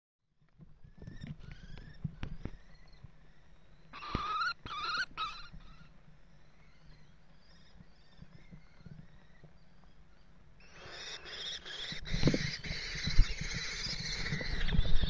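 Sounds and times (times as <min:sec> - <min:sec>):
faint chirping: 0:00.8 - 0:15.0
kestrels calling harshly: 0:02.6 - 0:06.0, 0:10.6 - 0:15.0.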